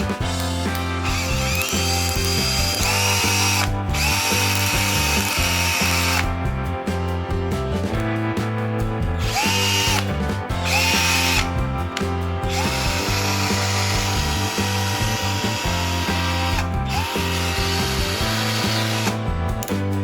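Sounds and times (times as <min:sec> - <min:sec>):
background music: 0:00.0 - 0:20.0
cordless drill motor whining: 0:00.4 - 0:06.4, 0:09.2 - 0:11.6, 0:12.4 - 0:19.2.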